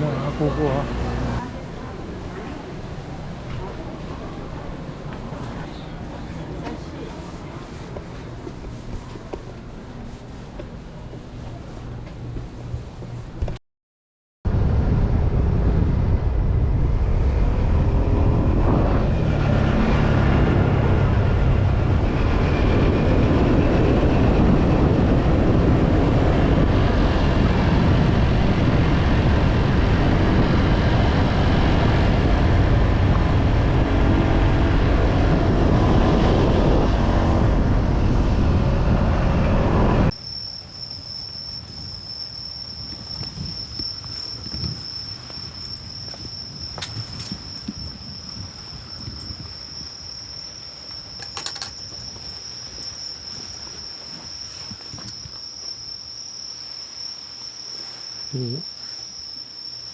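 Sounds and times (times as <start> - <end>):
wind on microphone: 14.5 - 40.2, 41.1 - 55.6
crickets chirping: 40.1 - 59.9.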